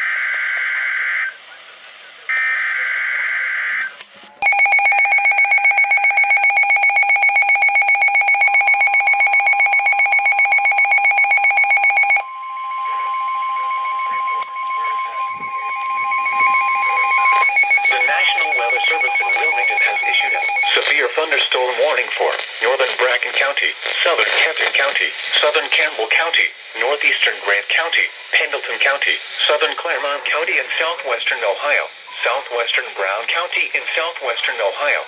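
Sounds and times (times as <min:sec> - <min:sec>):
rapidly pulsing alarm beep: 0:04.4 - 0:20.9
steady warning tone: 0:04.4 - 0:20.9.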